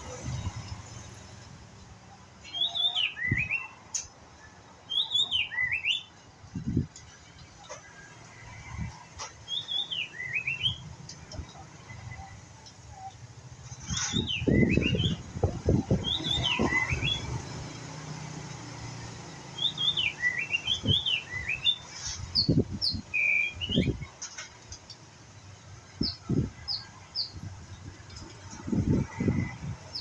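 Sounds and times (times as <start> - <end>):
bird chirping and whistling: 2.4 - 3.7, 4.9 - 6.1, 9.5 - 10.8, 13.9 - 15.3, 15.9 - 17.4, 19.6 - 24.0.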